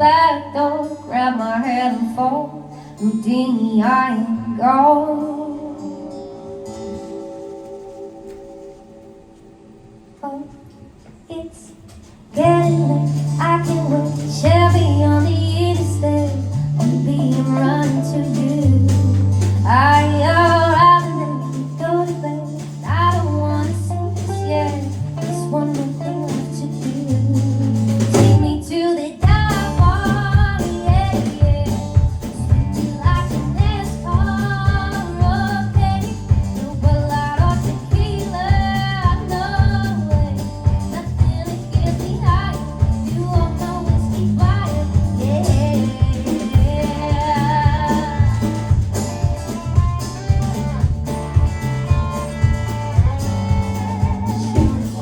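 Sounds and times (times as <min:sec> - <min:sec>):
guitar: 0:00.0 - 0:55.0
drums and bass beat: 0:12.0 - 0:55.0
held bass notes: 0:12.4 - 0:28.6, 0:29.2 - 0:55.0.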